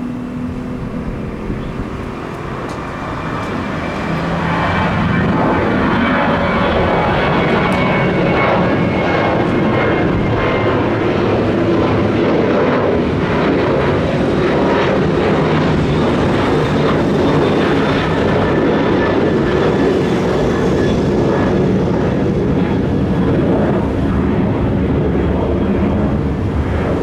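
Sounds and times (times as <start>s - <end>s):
faint high whine: 0.0s - 12.3s
aircraft engines roaring: 0.0s - 27.0s.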